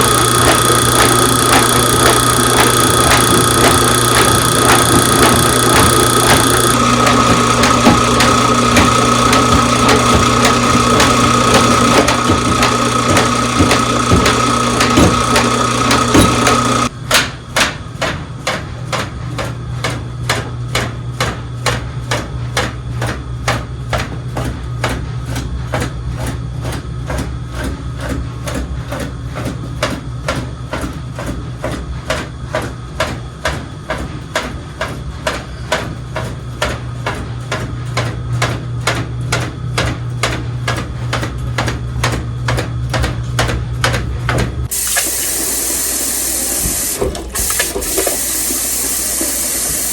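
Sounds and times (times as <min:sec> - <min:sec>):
drain snake machine humming: 0:00.0 - 0:17.0, 0:36.9 - 0:49.9
running water hissing: 0:44.7 - 0:49.9.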